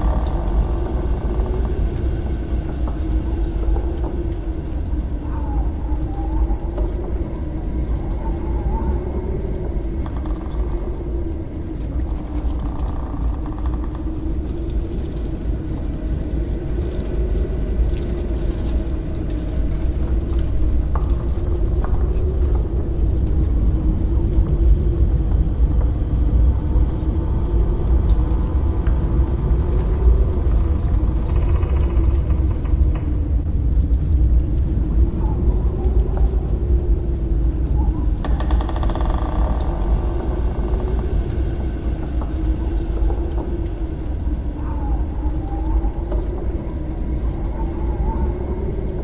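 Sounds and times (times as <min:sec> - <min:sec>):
deep rumble: 0:00.0 - 0:49.0
sustained droning tone: 0:00.0 - 0:49.0.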